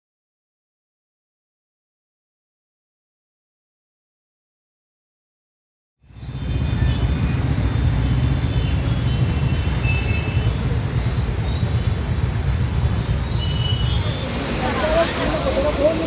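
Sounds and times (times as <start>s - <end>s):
vehicle rumble: 6.0s - 16.0s.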